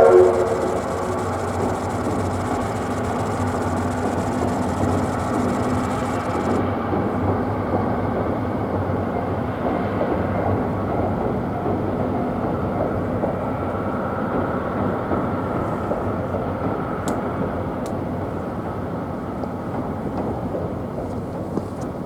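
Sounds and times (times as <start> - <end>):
high hiss: 0.0 - 6.6.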